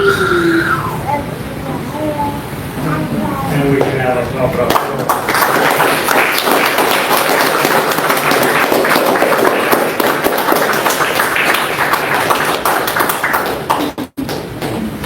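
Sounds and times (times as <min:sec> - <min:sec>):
crowd applauding: 0:03.8 - 0:14.5.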